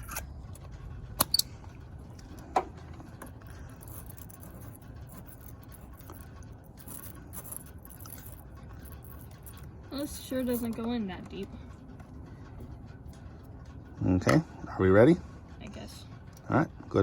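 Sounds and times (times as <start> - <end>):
sharp metal clicks: 0.0 - 2.7.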